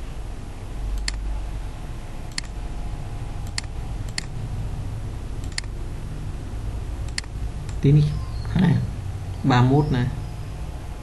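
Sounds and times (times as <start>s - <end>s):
low steady hum: 0.0s - 11.0s
computer mouse clicks: 1.0s - 1.2s, 2.3s - 2.6s, 3.4s - 4.3s, 5.4s - 5.7s, 7.1s - 7.8s.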